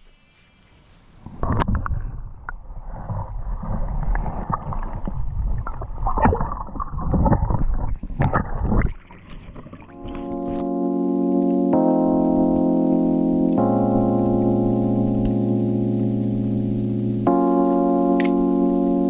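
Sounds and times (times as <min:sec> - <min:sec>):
water sloshing and splashing: 0:02.9 - 0:10.6
background piano music: 0:09.9 - 0:19.0.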